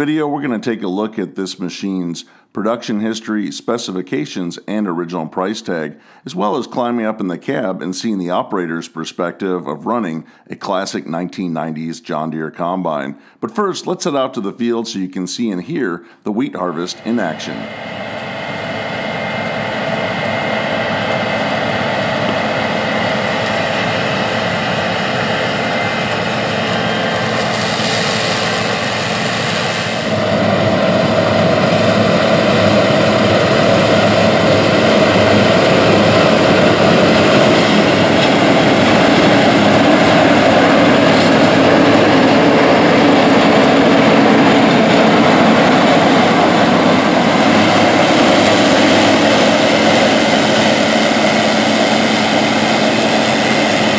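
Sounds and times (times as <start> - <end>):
combine harvester engine and machinery: 16.7 - 53.9.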